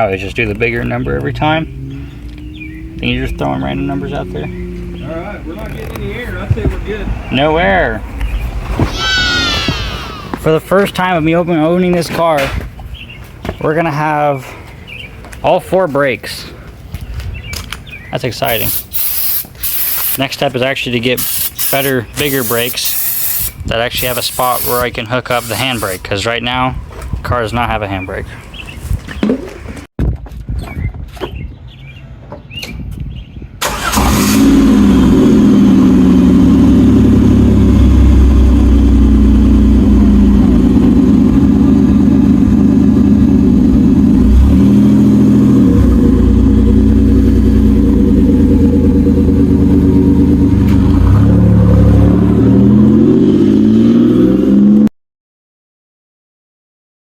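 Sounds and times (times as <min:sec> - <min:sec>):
car engine revving: 0:00.4 - 0:11.1, 0:33.6 - 0:54.9.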